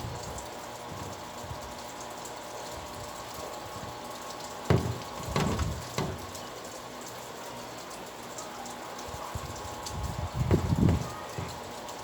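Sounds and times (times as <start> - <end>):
steady rain falling: 0.0 - 12.0
low thuds: 4.7 - 6.4, 10.4 - 11.6.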